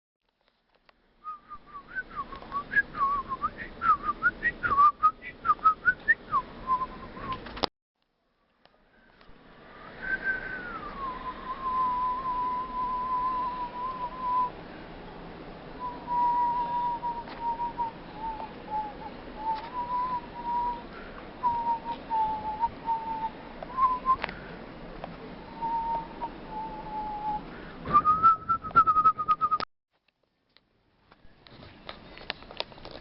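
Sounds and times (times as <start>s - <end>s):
thin whistling tone: 1.2s - 7.4s, 9.8s - 14.6s, 15.8s - 24.3s, 25.5s - 29.6s.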